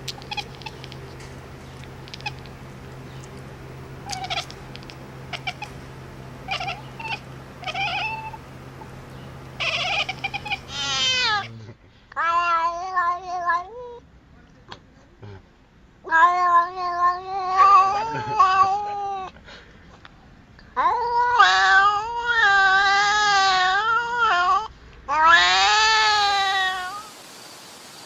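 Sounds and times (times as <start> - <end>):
steady low hum: 0.0 - 11.8
cat meowing: 0.1 - 2.6, 4.0 - 5.8, 6.4 - 8.4, 9.5 - 11.6.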